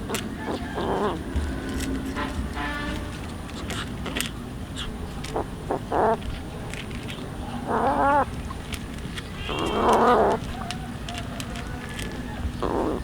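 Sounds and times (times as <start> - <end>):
animal calling: 0.4 - 1.3, 4.8 - 6.5, 7.4 - 13.0.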